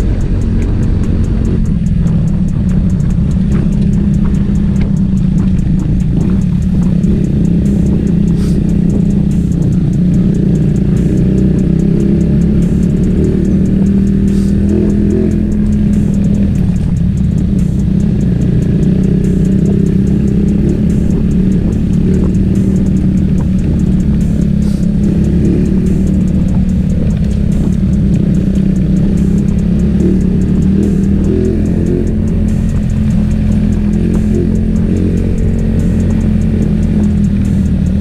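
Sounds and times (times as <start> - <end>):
motorcycle engine drone: 0.0 - 38.0.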